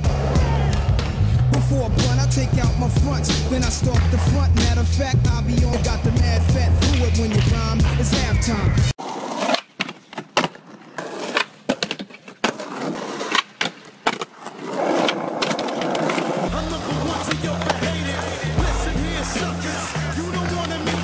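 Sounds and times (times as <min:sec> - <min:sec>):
music with heavy bass line: 0:00.0 - 0:08.9, 0:16.5 - 0:21.0
skateboard wheels rolling on pavement: 0:00.0 - 0:21.0
skateboard deck clacks: 0:00.4 - 0:08.6, 0:09.3 - 0:21.0.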